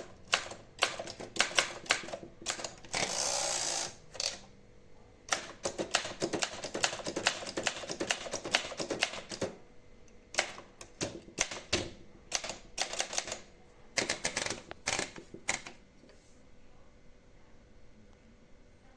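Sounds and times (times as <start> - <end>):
manual typewriter typing: 0.0 - 4.4, 5.3 - 9.6, 10.3 - 15.8.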